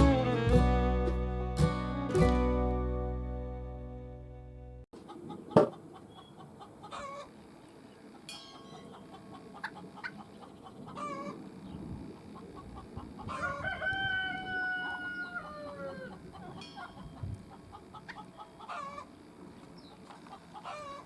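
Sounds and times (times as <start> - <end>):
poultry calling: 5.0 - 7.4, 8.7 - 11.4, 12.4 - 19.2, 19.9 - 21.0
rooster crowing: 13.2 - 16.2.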